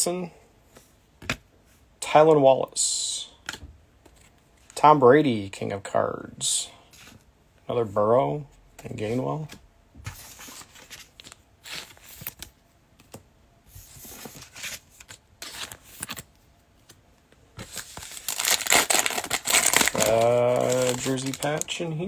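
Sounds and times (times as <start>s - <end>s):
trading cards rustling and tapping: 17.6s - 21.8s
card pack wrapper tearing: 17.7s - 21.8s.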